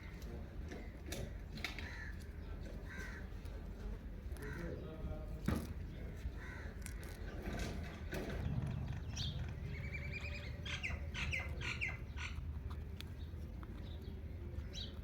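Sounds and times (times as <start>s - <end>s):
parakeet calls: 9.0s - 12.4s.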